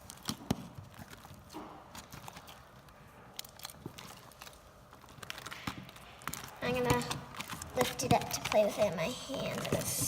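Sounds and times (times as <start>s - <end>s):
slime clicking and squishing: 0.0s - 10.0s.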